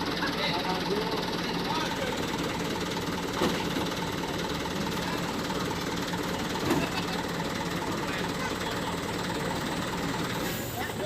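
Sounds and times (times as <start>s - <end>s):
engine idling: 0.0s - 11.0s.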